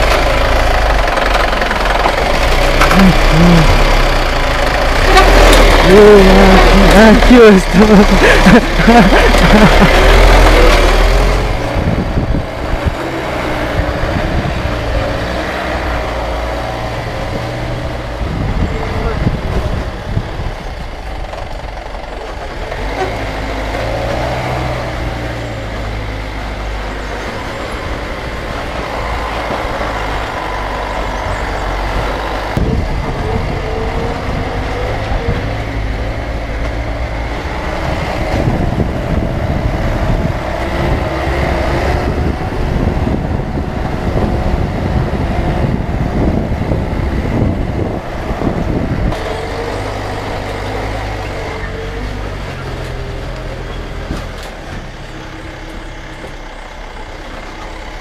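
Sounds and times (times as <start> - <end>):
knocks and rattles: 0.0 - 5.9
vehicle engine running: 0.0 - 58.0.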